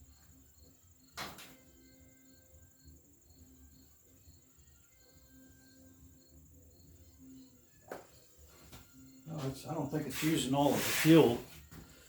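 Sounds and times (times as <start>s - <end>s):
cricket chirping: 0.0s - 10.5s.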